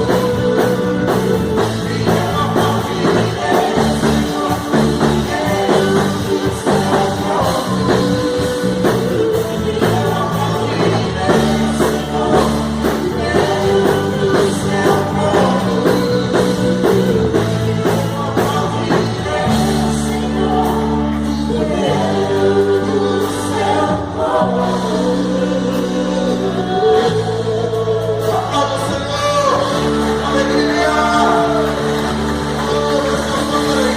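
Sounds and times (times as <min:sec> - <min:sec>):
drum and cymbal hits: 0:00.0 - 0:20.1
band playing worship music: 0:00.0 - 0:33.9
group of singers: 0:00.0 - 0:33.9.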